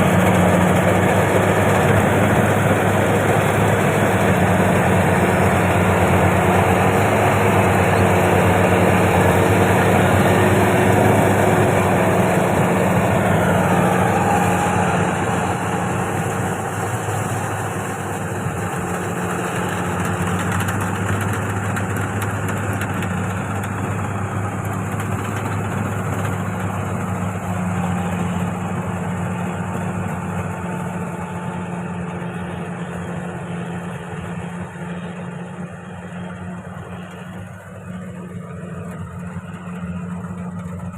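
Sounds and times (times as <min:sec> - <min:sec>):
combine harvester engine humming: 0:00.0 - 0:40.9.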